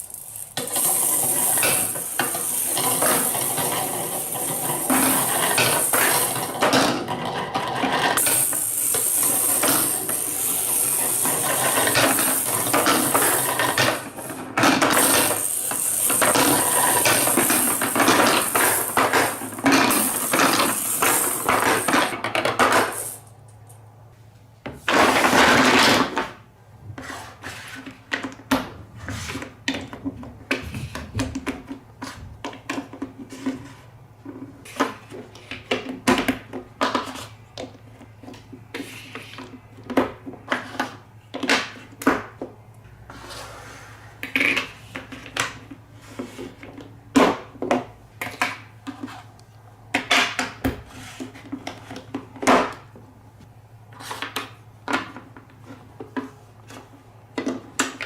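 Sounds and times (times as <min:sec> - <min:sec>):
marbles clicking and tapping: 0:00.0 - 0:07.0, 0:07.6 - 0:23.3
marbles clattering in marble run: 0:00.0 - 0:23.3.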